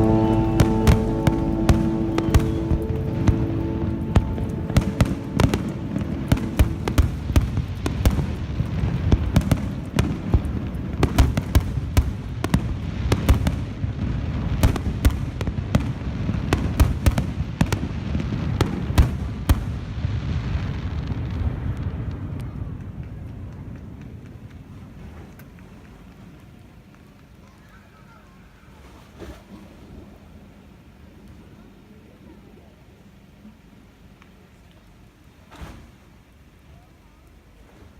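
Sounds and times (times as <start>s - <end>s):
fireworks bangs and cracks: 0.0s - 24.4s.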